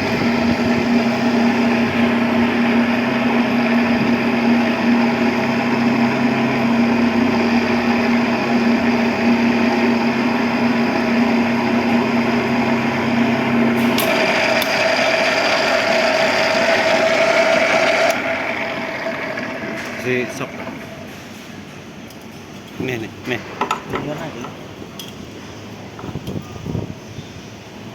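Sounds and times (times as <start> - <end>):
pipe-threading machine motor hum: 0.0 - 21.2.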